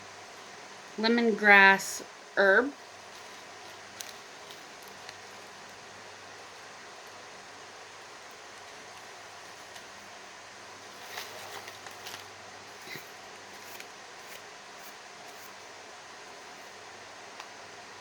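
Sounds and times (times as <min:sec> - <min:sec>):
steady background hiss: 0:00.0 - 0:18.0
packets crinkling and tapping: 0:03.1 - 0:05.8.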